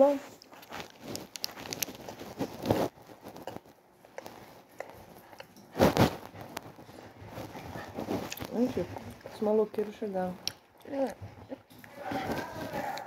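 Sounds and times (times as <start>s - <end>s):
biting and chewing candy bar: 0.4s - 9.3s.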